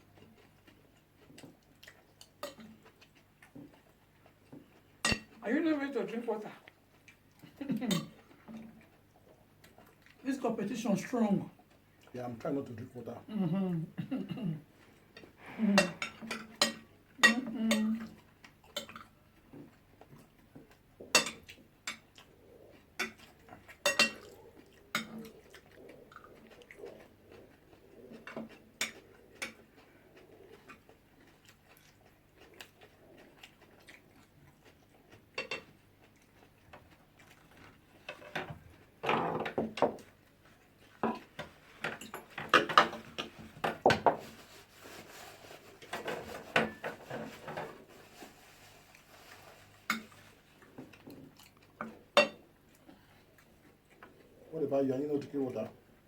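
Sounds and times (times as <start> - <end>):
cutlery clinking on plates: 5.0 - 5.3, 15.2 - 17.8, 21.0 - 22.1, 23.0 - 24.4, 25.0 - 25.3, 35.4 - 35.7, 41.0 - 44.2, 45.9 - 47.8, 49.8 - 50.2, 51.8 - 52.4.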